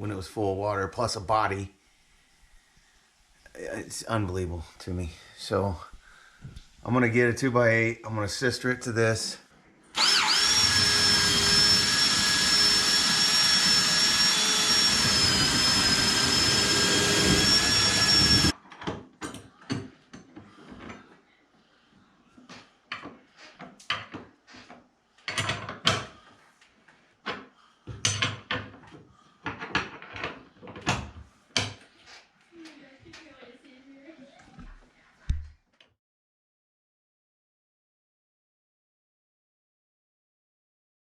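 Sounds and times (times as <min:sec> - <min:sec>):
power tool motor whining: 0:10.0 - 0:18.5
knocks and clatter of work: 0:17.0 - 0:21.1, 0:22.5 - 0:26.2, 0:27.2 - 0:31.8.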